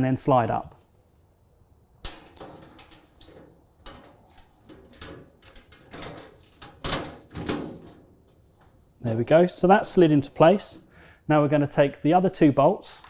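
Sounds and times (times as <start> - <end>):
sheet metal knocks and clicks: 2.0 - 8.0.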